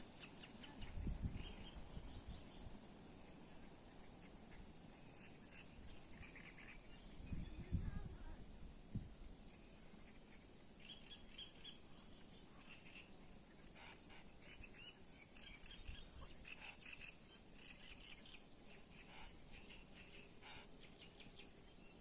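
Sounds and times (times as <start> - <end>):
outdoor background noise: 0.0 - 22.0
small birds chirping: 0.0 - 22.0.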